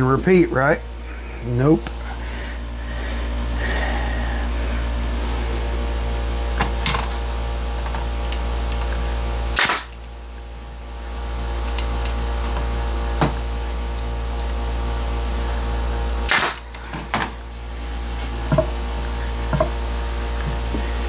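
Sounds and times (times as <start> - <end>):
steady mechanical hum: 0.0 - 21.0
nail gun firing: 9.6 - 10.0, 16.3 - 16.8.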